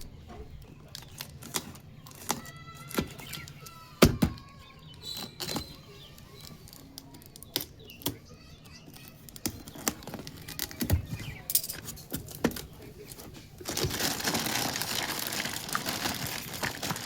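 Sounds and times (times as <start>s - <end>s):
plastic squeak: 0.9s - 8.2s.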